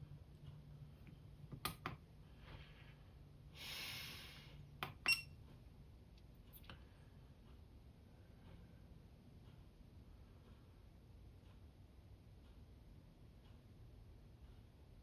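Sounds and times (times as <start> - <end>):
soft breath-like hiss: 2.4 - 4.7.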